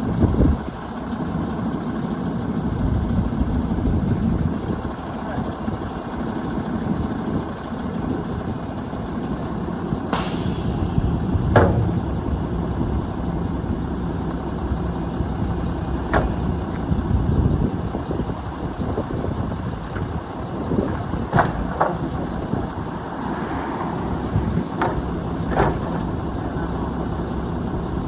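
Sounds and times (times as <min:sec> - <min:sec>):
diesel engine running: 0:00.0 - 0:28.0
air hiss: 0:10.1 - 0:13.3
sharp knocks: 0:11.4 - 0:12.2, 0:16.1 - 0:16.5.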